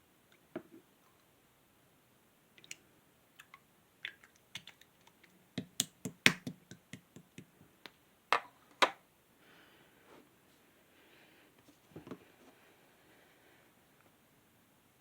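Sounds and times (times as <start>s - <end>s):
slime clicking and popping: 5.6s - 7.3s.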